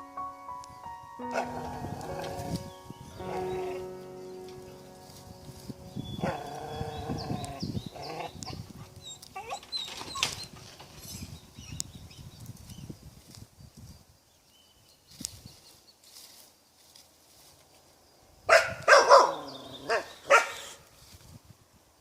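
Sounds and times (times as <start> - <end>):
dog whining and yelping: 9.0 - 10.5.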